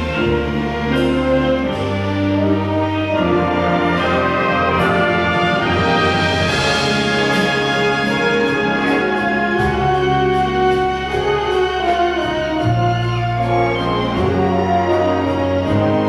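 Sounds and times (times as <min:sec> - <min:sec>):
orchestra playing brass and strings: 0:00.0 - 0:16.0.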